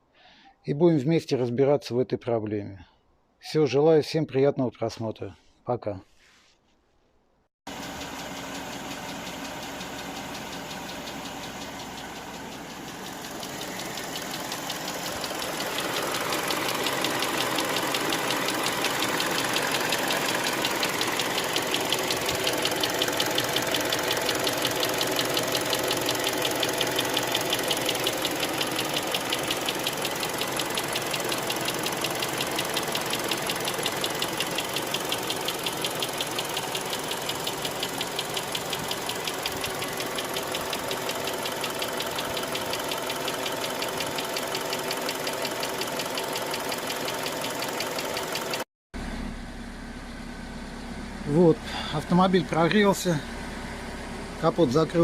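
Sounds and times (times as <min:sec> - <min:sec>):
engine idling with knock: 0:07.7 - 0:48.6.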